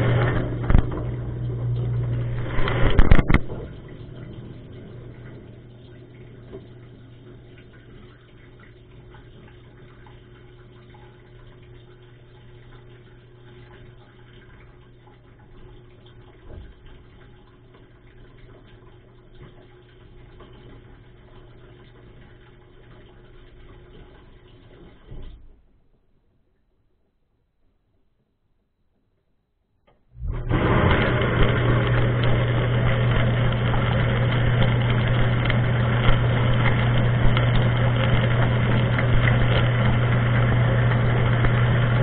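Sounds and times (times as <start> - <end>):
water spraying and splashing: 0.0 - 9.9, 30.2 - 42.0
pump motor hum: 0.0 - 25.7, 30.1 - 42.0.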